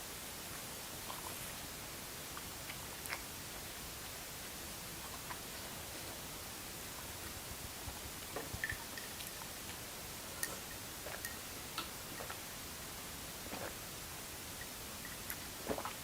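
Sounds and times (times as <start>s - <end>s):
background hiss: 0.0s - 16.0s
person eating soup: 15.6s - 16.0s.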